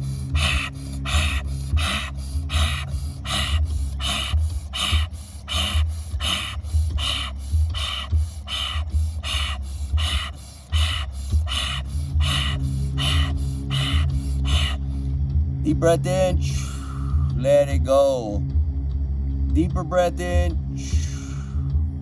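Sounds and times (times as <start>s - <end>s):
person breathing fast and hard: 0.0s - 15.4s, 16.4s - 17.4s, 20.7s - 21.8s
low steady hum: 0.0s - 22.0s.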